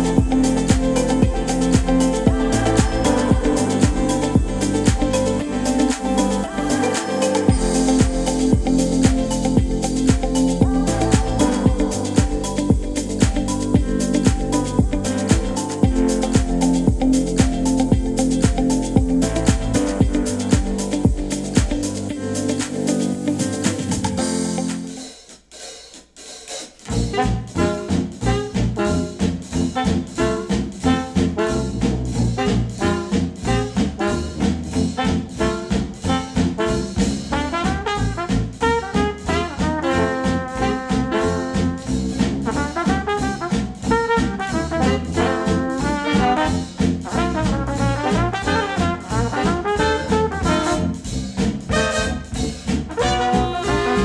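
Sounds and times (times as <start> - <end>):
instrumental music with brass and drums: 0.0 - 54.0.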